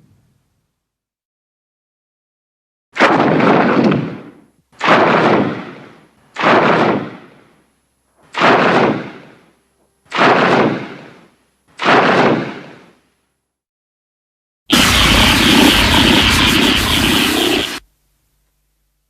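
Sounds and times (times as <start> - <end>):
monster rushing noise bursts: 14.7 - 17.8.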